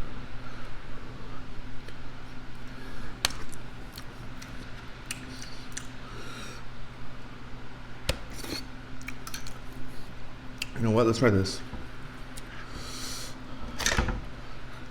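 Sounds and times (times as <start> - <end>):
steady low hum: 0.0 - 14.9
person chewing: 2.6 - 6.7, 8.1 - 10.8.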